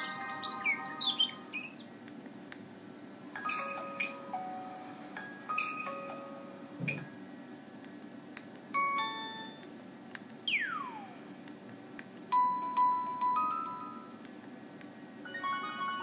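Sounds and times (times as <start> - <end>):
phone message chime: 12.4 - 14.2.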